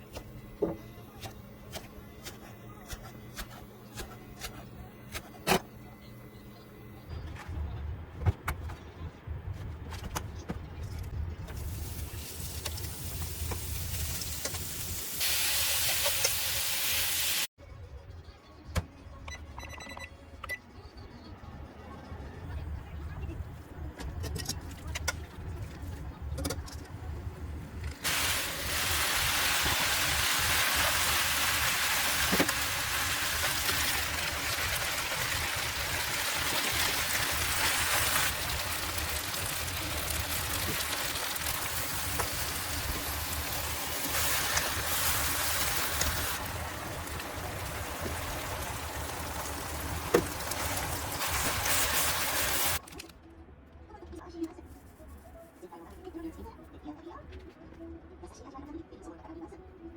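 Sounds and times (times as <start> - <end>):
food sizzling in frying pan: 11.7 - 17.5, 28.1 - 52.8.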